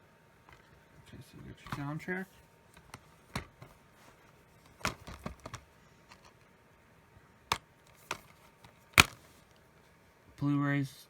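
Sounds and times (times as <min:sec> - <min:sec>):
plastic disc cases clicking: 0:01.6 - 0:02.0, 0:02.8 - 0:03.8, 0:04.6 - 0:06.4, 0:07.5 - 0:09.6.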